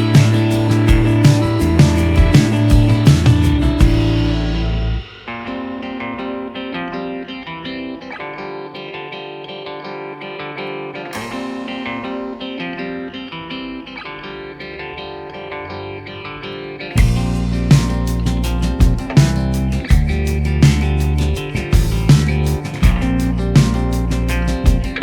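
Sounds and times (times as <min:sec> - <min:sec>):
plucked guitar music: 0:00.0 - 0:25.0.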